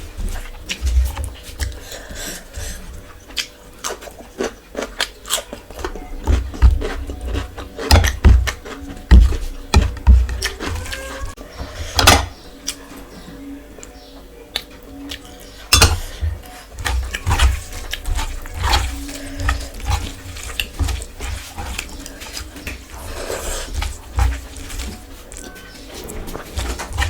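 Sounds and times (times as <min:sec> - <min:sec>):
chewing and mouth noises: 0:00.0 - 0:27.0
food tapping against plate: 0:05.8 - 0:11.0.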